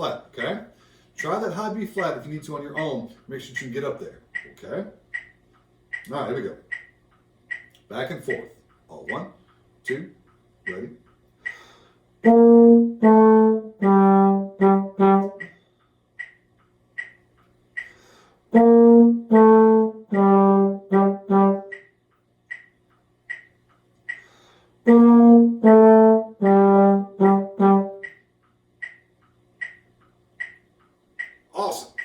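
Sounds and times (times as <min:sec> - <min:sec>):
metronome ticking: 0:00.0 - 0:32.0
brass instrument phrase: 0:12.2 - 0:15.5, 0:18.5 - 0:21.8, 0:24.8 - 0:28.1.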